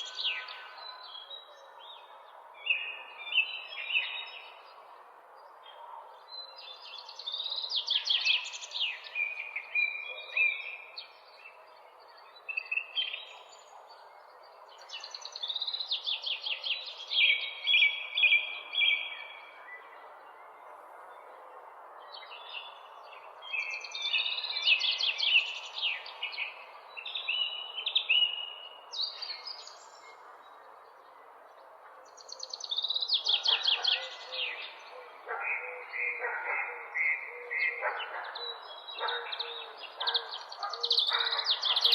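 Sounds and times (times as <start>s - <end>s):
songbird singing trills: 32.1s - 41.9s.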